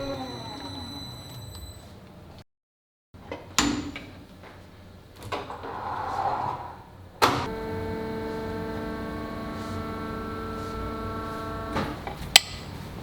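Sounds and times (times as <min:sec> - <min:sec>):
machine humming: 0:07.5 - 0:11.8.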